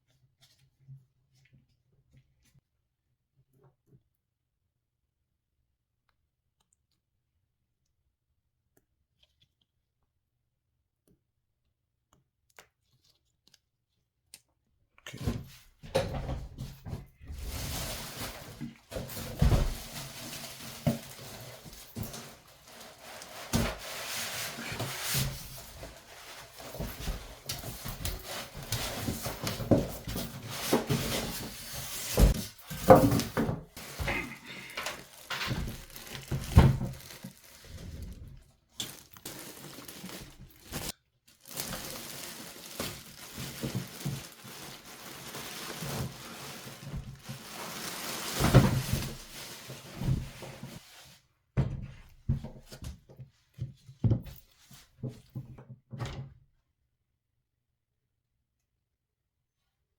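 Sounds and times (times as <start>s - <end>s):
packaging rustling: 17.3s - 50.4s
knocks and thunks of handling: 24.7s - 40.9s, 51.6s - 56.4s.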